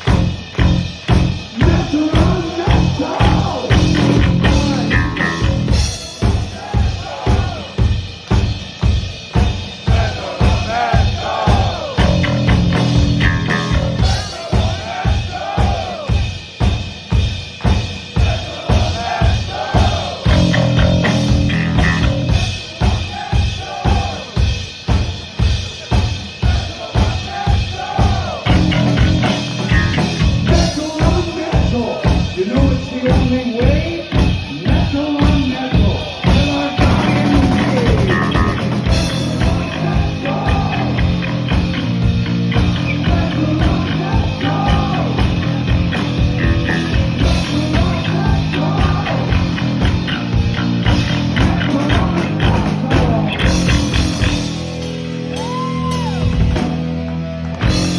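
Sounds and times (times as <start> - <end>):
kick and snare drum beat: 0.0 - 54.5.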